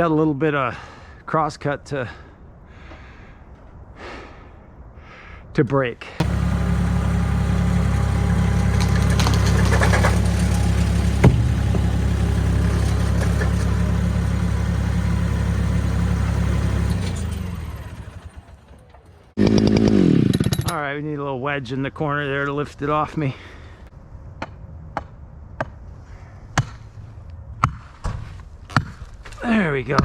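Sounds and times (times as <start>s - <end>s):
engine running at low speed: 6.2s - 20.6s.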